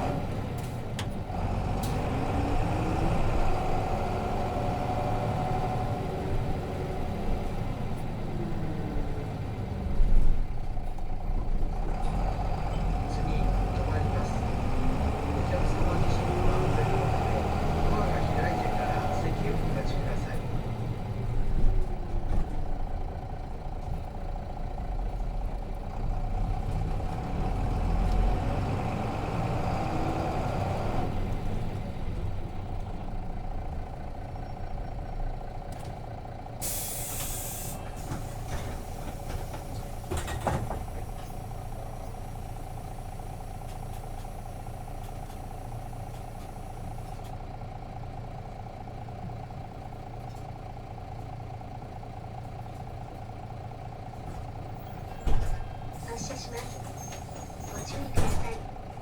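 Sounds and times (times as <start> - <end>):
bus diesel engine: 0.0 - 59.0
air brake hiss: 36.6 - 40.4.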